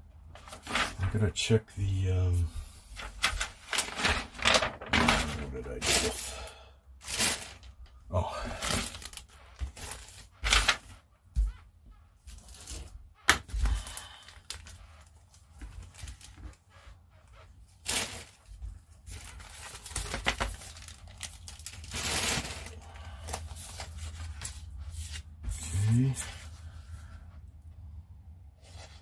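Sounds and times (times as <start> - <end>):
packaging rustling: 3.0 - 6.4, 7.0 - 7.9, 8.5 - 10.9, 17.7 - 25.6.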